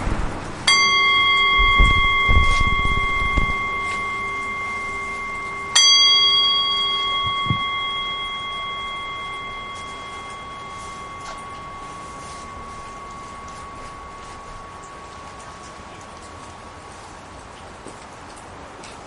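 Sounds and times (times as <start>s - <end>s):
low thumps: 0.0s - 15.1s
small bell ringing: 0.7s - 16.9s.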